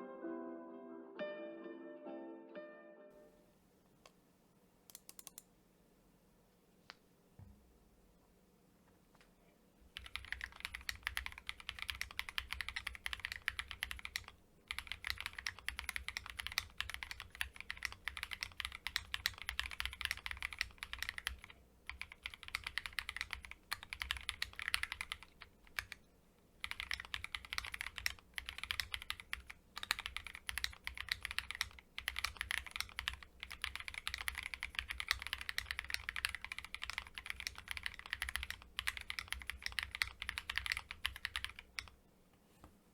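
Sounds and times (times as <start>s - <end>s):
fast typing on mechanical keyboard: 4.9s - 5.4s, 9.9s - 26.0s, 26.6s - 42.0s.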